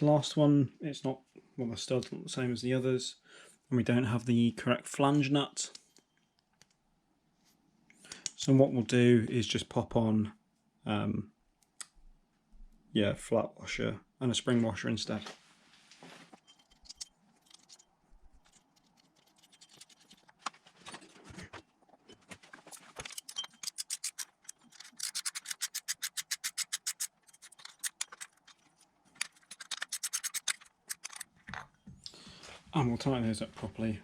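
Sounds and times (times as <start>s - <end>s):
metallic clinks and rattles: 16.4s - 21.2s, 22.0s - 31.9s
hand ratchet clicking: 23.1s - 28.5s, 29.2s - 31.2s.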